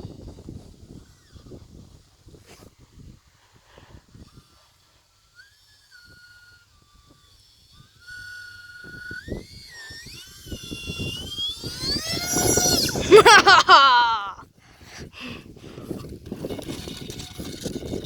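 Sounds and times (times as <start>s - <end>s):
wind rumble on microphone: 0.0s - 4.5s, 8.8s - 13.3s, 14.6s - 18.0s
model jet fan whine: 0.0s - 18.0s.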